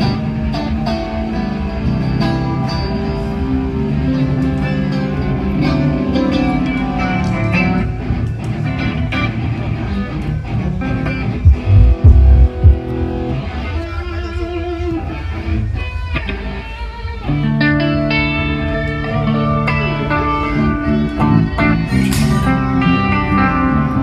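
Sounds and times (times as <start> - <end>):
loud low thumps: 11.4 - 12.9
bass guitar sustained notes: 11.4 - 13.6
electric guitar sustained notes: 11.4 - 14.6.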